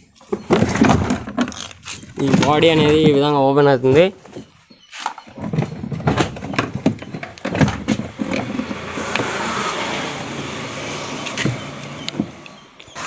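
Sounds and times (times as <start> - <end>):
knocks and clatter of metal panel: 0.3 - 3.3, 5.2 - 9.0
rubbing noise: 7.8 - 13.0.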